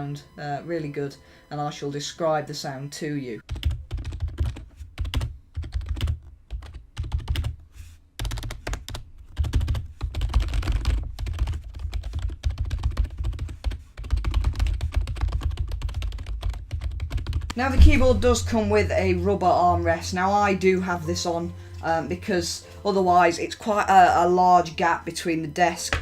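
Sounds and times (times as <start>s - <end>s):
rapid typing on keyboard: 3.4s - 7.6s, 8.2s - 19.0s.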